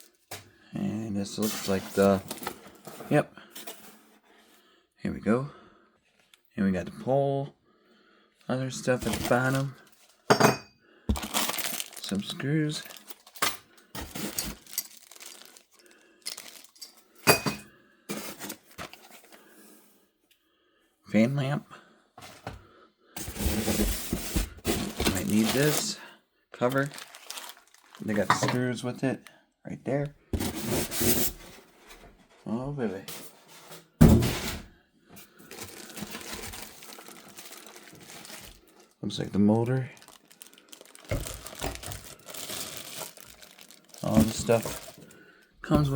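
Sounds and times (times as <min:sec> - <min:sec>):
packing material rustling: 0:01.4 - 0:03.0, 0:08.9 - 0:10.2, 0:11.1 - 0:17.0, 0:23.2 - 0:26.0, 0:26.6 - 0:28.6, 0:35.3 - 0:45.9
cardboard box bump and scrape: 0:23.2 - 0:25.8, 0:30.4 - 0:31.5.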